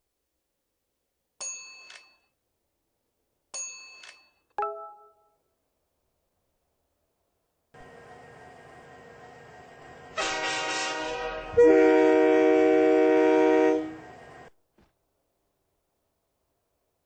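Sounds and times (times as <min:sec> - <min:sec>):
loud horn chord: 0:10.2 - 0:13.9.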